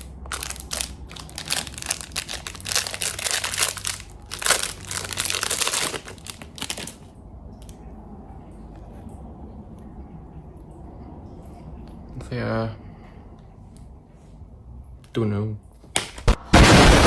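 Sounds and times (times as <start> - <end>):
packaging crinkling and rustling: 0.0 - 7.1.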